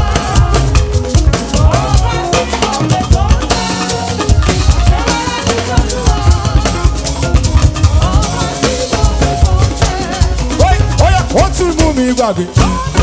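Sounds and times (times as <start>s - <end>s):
busy drum kit and percussion: 0.0s - 13.0s
upbeat band music: 0.0s - 13.0s.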